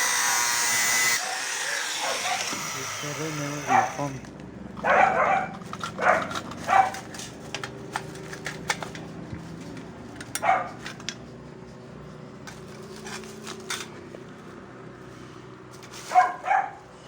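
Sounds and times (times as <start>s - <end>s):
dog barking: 2.0s - 2.5s, 3.7s - 4.1s, 4.8s - 7.0s, 10.4s - 10.8s, 16.1s - 16.8s.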